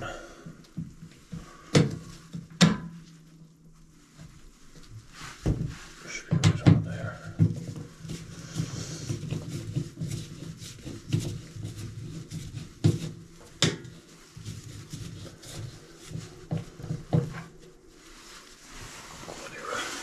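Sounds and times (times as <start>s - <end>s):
knocks of plumbing parts and tools: 0.6s - 3.0s, 5.5s - 10.2s, 12.8s - 14.0s, 16.1s - 17.5s.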